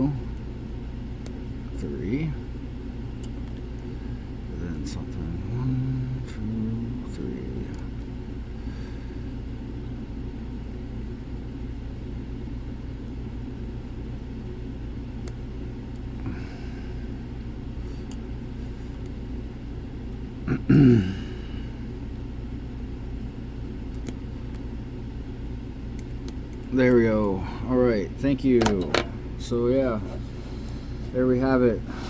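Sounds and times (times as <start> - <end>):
steady low rumble: 0.0 - 32.0
throaty vocal sound: 20.5 - 21.6.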